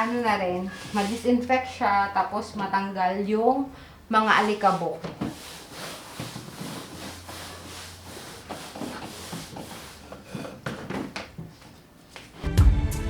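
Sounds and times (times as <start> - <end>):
rubbing and wiping on a surface: 0.0 - 1.7, 4.2 - 10.6
background music: 12.4 - 13.0.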